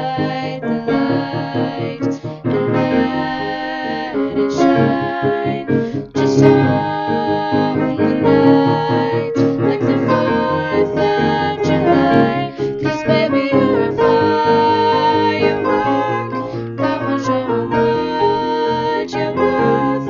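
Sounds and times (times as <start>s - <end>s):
piano accompaniment: 0.0s - 20.0s
voices singing in harmony: 0.0s - 20.0s.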